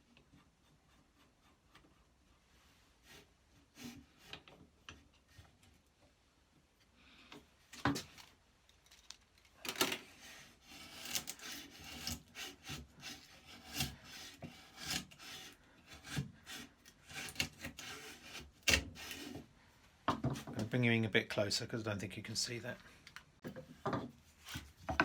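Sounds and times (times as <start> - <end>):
plane blade shaving wood: 10.2 - 19.4.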